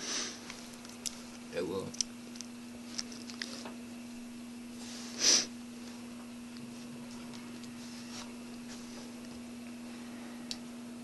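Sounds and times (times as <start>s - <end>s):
person sniffing: 0.0s - 0.4s, 5.0s - 5.5s
steady low hum: 0.0s - 11.0s.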